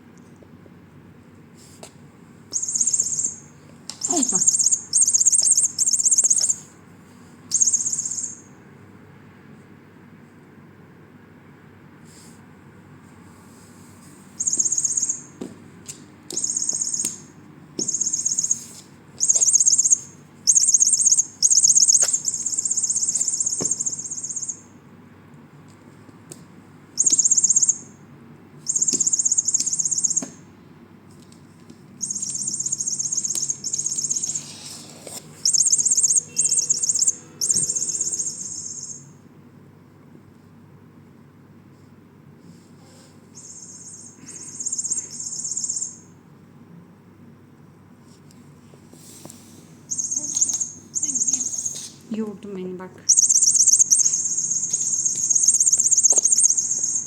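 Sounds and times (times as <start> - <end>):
toy mouse electronic chirping: 2.5 - 6.7, 7.5 - 8.6, 14.4 - 15.4, 16.3 - 24.8, 27.0 - 28.0, 28.6 - 30.4, 32.0 - 34.8, 35.4 - 39.2, 43.4 - 46.2, 49.9 - 52.0, 53.1 - 57.0.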